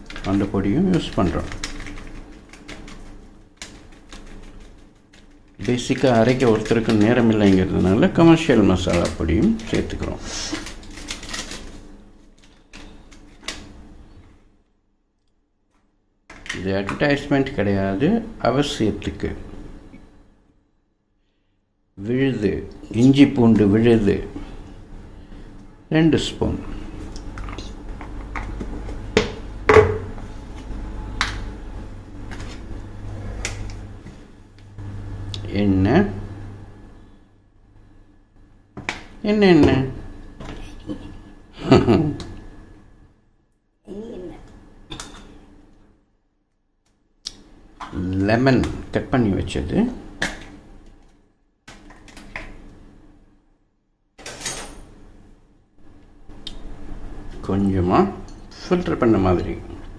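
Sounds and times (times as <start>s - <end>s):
steady low hum: 0.0s - 15.1s, 16.3s - 46.1s, 54.7s - 59.9s.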